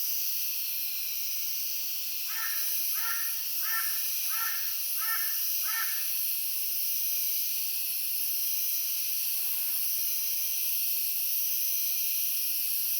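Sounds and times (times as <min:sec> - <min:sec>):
high-pitched outdoor hiss: 0:00.0 - 0:12.9
harsh bird calls: 0:02.3 - 0:06.0.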